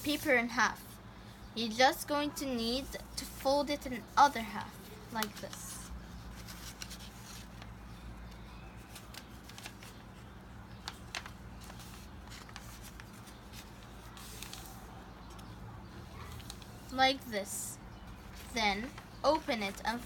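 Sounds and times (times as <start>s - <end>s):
paper rustling and crinkling: 4.6s - 15.6s, 18.0s - 20.0s.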